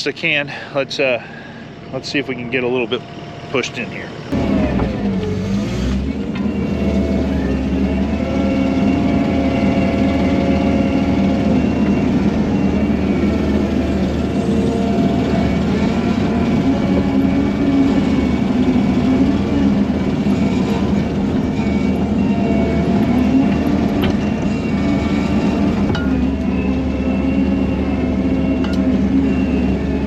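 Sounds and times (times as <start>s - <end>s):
loader engine running: 0.0s - 30.0s.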